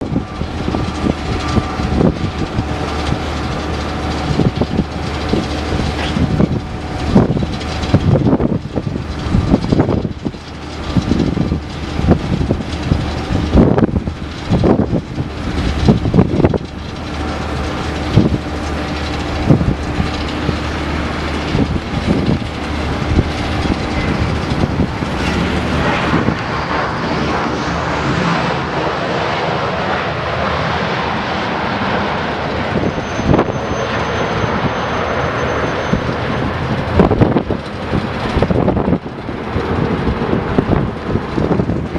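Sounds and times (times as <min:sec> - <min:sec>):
jet engines whining: 0:00.0 - 0:41.9
wind buffeting microphone: 0:00.0 - 0:41.9.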